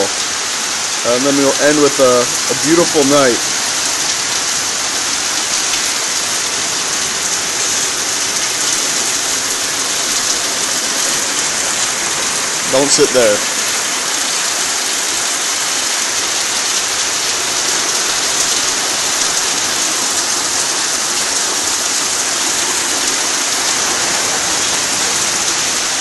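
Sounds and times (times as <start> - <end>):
rain falling steadily: 0.0 - 26.0.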